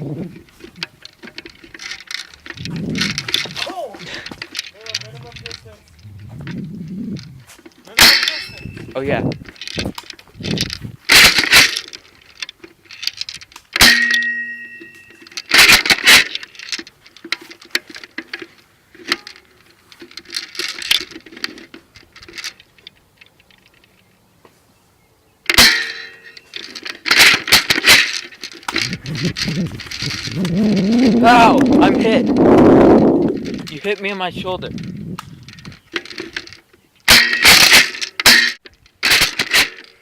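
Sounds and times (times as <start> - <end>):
rustling and knocks: 0.2 - 24.6
metallic ringing hit: 8.0 - 9.0, 13.8 - 15.2.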